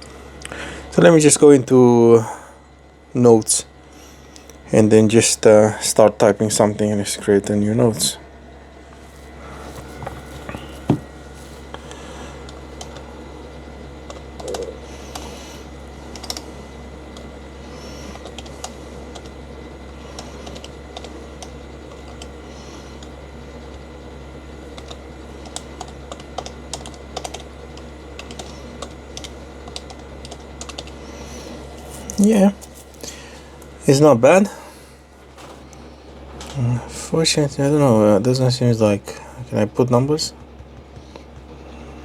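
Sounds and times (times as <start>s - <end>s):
keyboard key taps: 40.4s - 41.6s.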